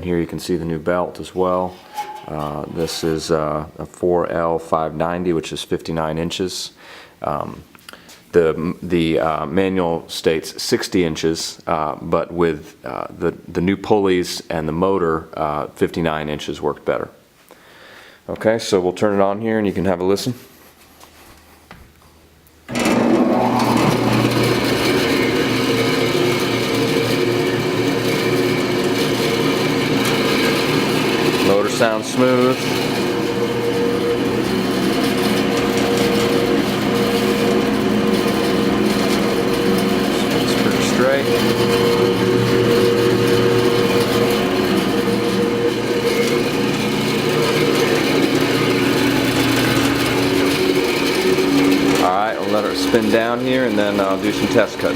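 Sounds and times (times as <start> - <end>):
band saw motor running: 1.8 - 3.3, 22.7 - 54.9.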